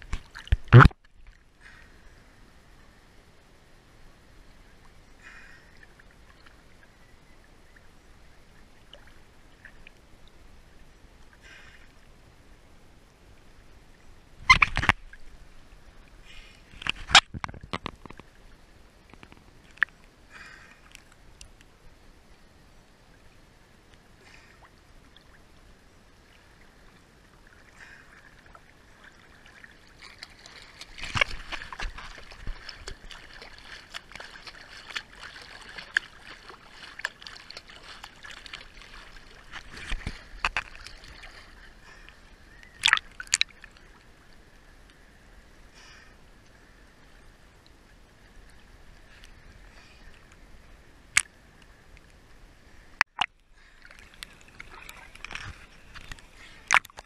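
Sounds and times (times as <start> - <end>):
sea water sloshing and splashing: 0.0 - 1.8, 26.2 - 44.2, 53.0 - 57.0.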